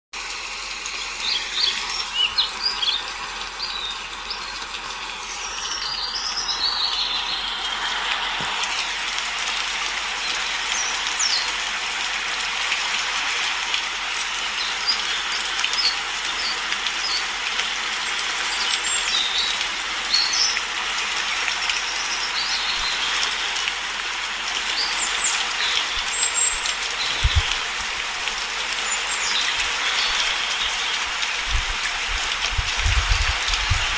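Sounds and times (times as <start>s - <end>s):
steady rain: 0.2s - 33.9s
songbirds chirping: 0.9s - 11.6s.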